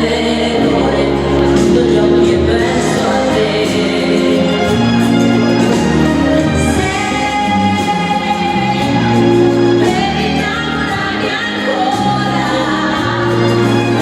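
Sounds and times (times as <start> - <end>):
ballroom dance music with singing: 0.0 - 14.0.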